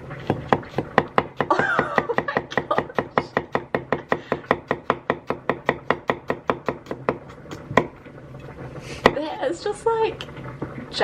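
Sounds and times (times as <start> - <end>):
knife chopping on cutting board: 0.2 - 7.9.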